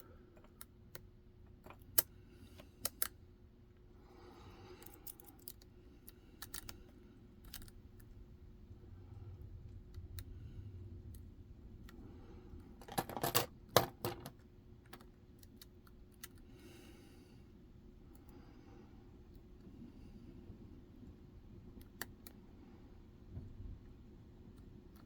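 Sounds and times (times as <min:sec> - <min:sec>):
lock pick metallic clicks and scrapes: 0:04.8 - 0:07.8.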